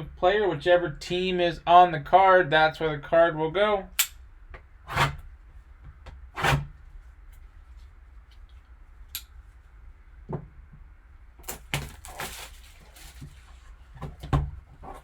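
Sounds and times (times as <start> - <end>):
packaging crinkling: 11.4 - 13.5.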